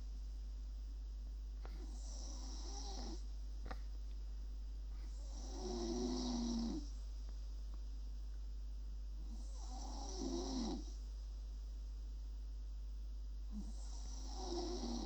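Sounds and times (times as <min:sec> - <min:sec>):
steady low hum: 0:00.0 - 0:15.0
person snoring: 0:13.6 - 0:15.0.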